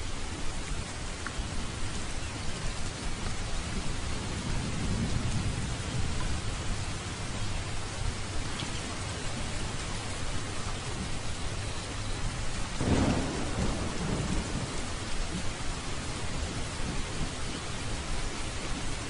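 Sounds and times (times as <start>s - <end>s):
steady rain falling: 0.0s - 19.0s
low roll of thunder: 3.1s - 11.2s, 11.9s - 18.0s.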